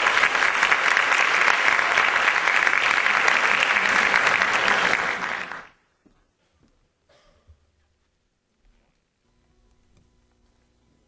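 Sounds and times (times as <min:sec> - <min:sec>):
audience applauding: 0:00.0 - 0:05.8.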